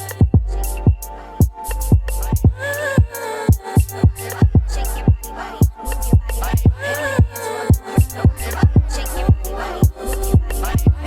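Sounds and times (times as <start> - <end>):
sustained bass: 0.0 - 11.0.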